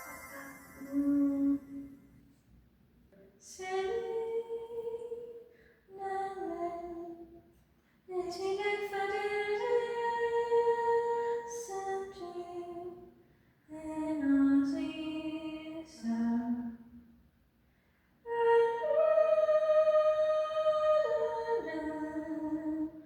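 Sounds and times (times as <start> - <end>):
woman singing unaccompanied: 0.8 - 2.0, 3.4 - 7.4, 8.1 - 13.0, 13.7 - 16.8, 18.3 - 23.0.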